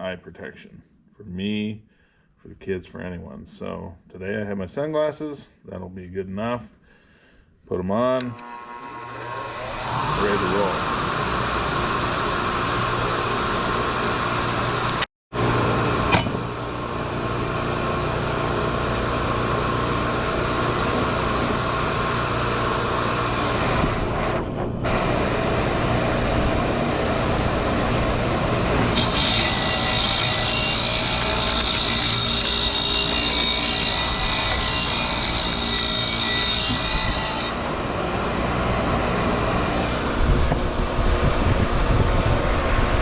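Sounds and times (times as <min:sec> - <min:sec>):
bench grinder wire brush scrubbing: 0:09.0 - 0:15.0, 0:18.0 - 0:39.9.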